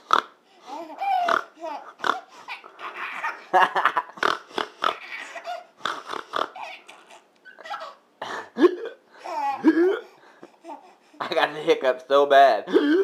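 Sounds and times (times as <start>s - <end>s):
person snorting: 4.2s - 5.0s, 5.8s - 6.6s.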